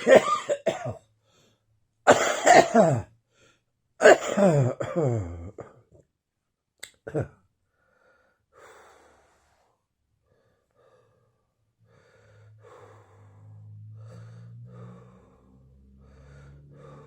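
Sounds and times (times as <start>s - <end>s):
wheezy laboured breathing: 7.8s - 17.0s
low humming tone: 12.2s - 17.0s.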